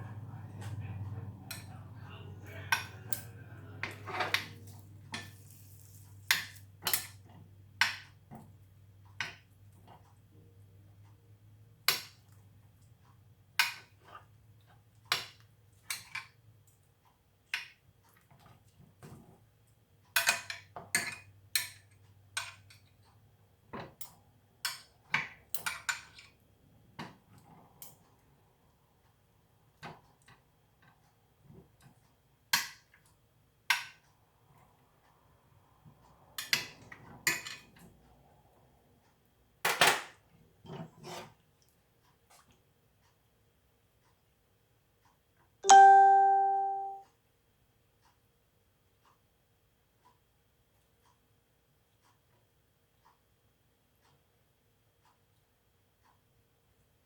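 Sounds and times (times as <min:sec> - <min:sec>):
low steady hum: 0:00.0 - 0:06.3
utensils clinking on a pan: 0:20.2 - 0:22.7, 0:36.4 - 0:37.7.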